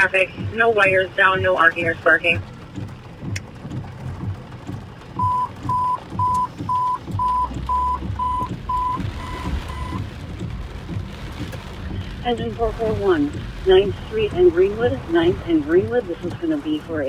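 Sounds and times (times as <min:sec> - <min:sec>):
short alert beeps over radio: 0:05.2 - 0:10.0.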